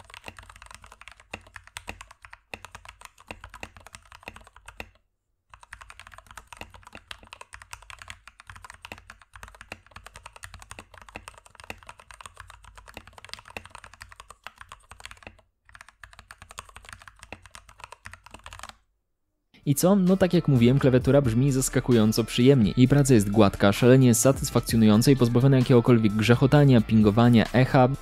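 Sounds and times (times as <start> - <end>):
typing on mechanical keyboard: 0.0 - 18.8.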